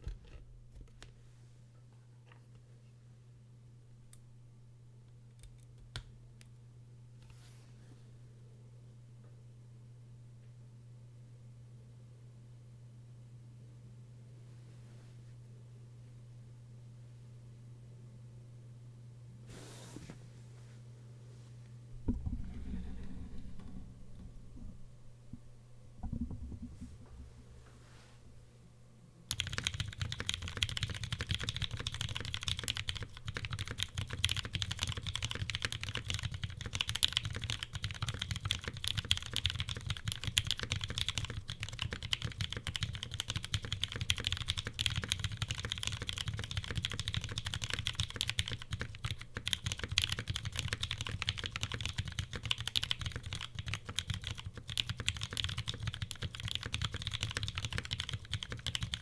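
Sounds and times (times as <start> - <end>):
mechanical keyboard typing: 29.3 - 59.0.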